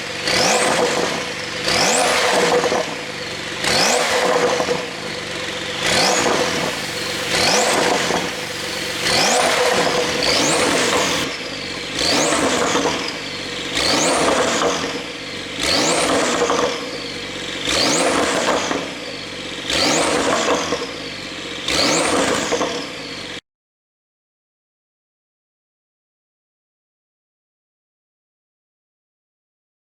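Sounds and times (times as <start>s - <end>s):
car engine revving: 0.0s - 23.4s
exhaust pops: 4.0s - 17.0s.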